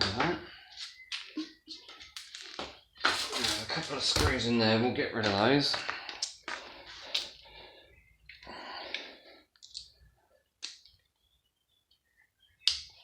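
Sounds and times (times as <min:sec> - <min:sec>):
scraping rustle: 0:03.1 - 0:04.0.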